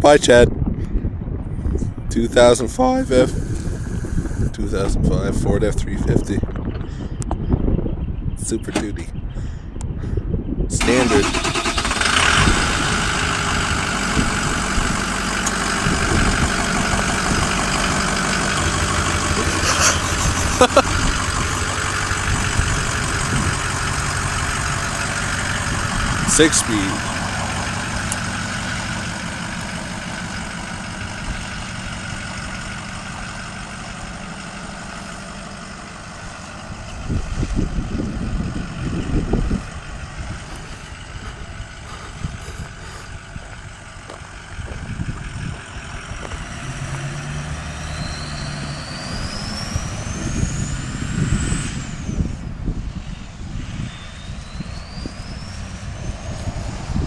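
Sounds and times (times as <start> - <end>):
diesel engine running under load: 0.0 - 57.0
low rumbling gusts: 0.0 - 57.0
turbocharger whistling: 10.7 - 42.1, 46.0 - 57.0.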